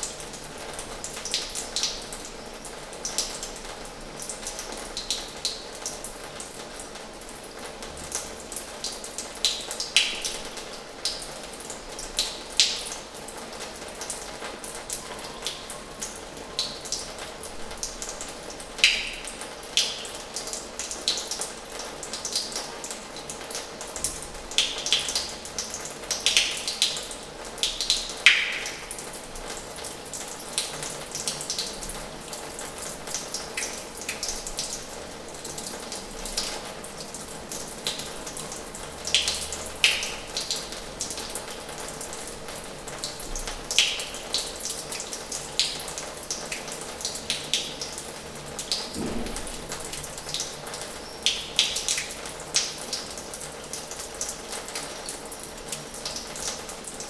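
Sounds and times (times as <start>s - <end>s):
water drips: 0.0s - 57.0s
tap water splashing into basin: 27.7s - 29.1s, 48.8s - 52.8s.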